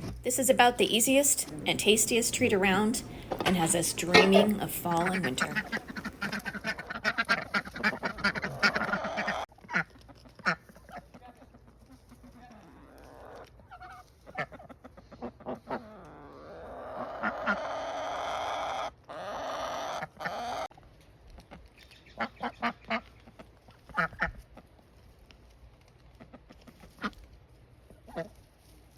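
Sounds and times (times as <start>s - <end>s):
chickens clucking: 0.0s - 20.7s
ducks quacking: 0.3s - 10.7s.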